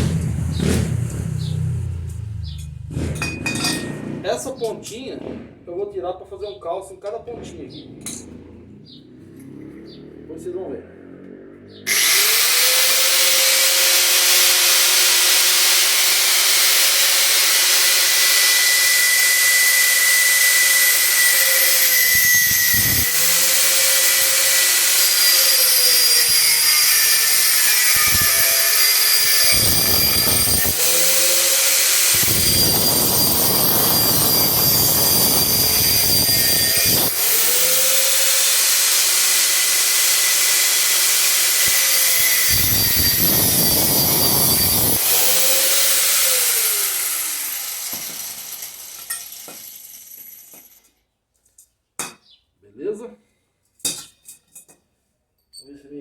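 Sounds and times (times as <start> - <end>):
electric grinder cutting metal: 11.9 - 50.8.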